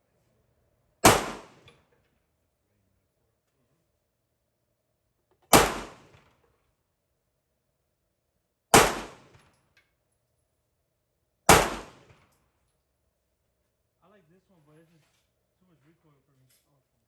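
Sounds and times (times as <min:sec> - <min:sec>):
pistol shots with echo: 0:01.0 - 0:01.7, 0:05.5 - 0:06.2, 0:08.7 - 0:09.4, 0:11.5 - 0:12.2.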